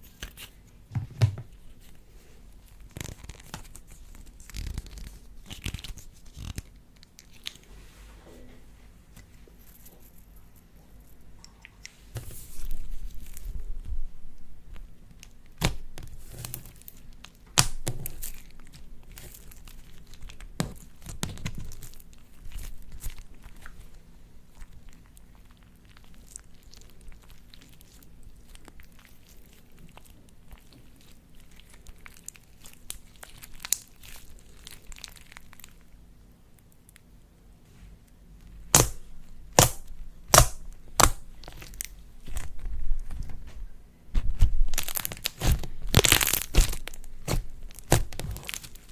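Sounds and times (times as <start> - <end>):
slime crinkling and crackling: 1.5 - 7.7, 11.6 - 37.1, 38.4 - 48.9
loud sharp cracks: 38.7 - 41.2.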